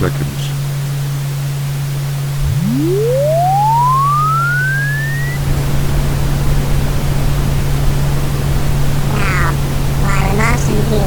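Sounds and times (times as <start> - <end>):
low engine hum: 0.0 - 11.0
engine tone sweeping to high whine: 2.2 - 7.1
low rumble: 2.3 - 11.0.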